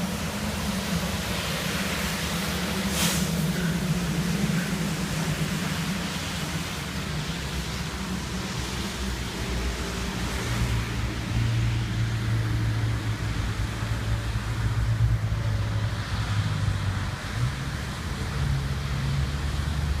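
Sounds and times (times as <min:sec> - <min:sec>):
constant hiss: 0:00.0 - 0:15.1.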